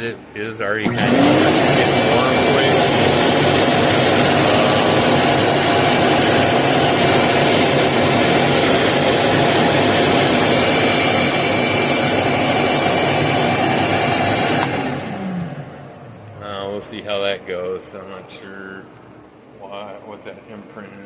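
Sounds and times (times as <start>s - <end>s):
shop vacuum running: 0.0s - 18.3s
vacuum motor winding down: 0.8s - 16.4s.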